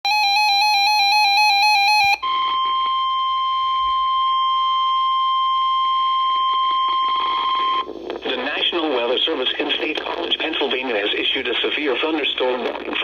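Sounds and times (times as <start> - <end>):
steady warning alarm tone: 0.0 - 7.8.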